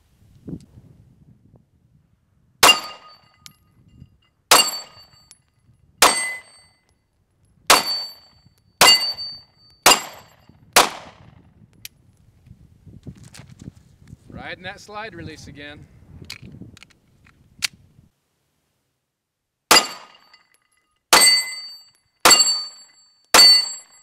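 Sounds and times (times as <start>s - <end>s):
pistol shots: 2.6s - 3.2s, 6.0s - 6.5s, 7.7s - 8.1s, 9.9s - 11.2s, 19.7s - 20.2s
short metallic ring: 2.6s - 7.0s, 7.7s - 10.6s, 19.7s - 24.0s.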